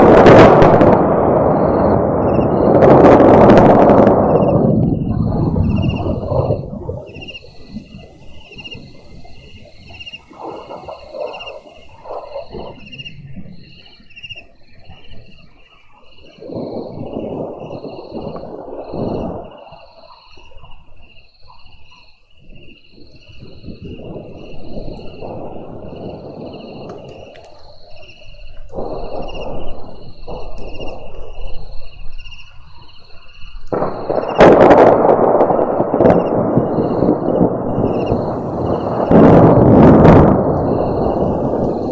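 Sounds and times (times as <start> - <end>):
sharp thunderclap: 0.0 - 14.2, 16.4 - 20.0, 23.1 - 32.5, 33.2 - 41.9
thunder rumbling: 0.0 - 15.6, 16.2 - 21.2, 22.5 - 41.9
high pulsing chirps: 4.2 - 15.5, 36.2 - 39.2, 40.6 - 41.9
night chorus of trilled calls: 4.2 - 34.8, 35.5 - 39.2, 40.6 - 41.9.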